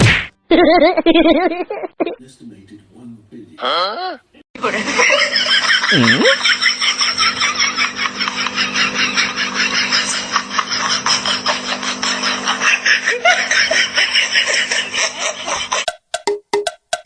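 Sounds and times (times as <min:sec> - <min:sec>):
people laughing: 0:04.6 - 0:15.9.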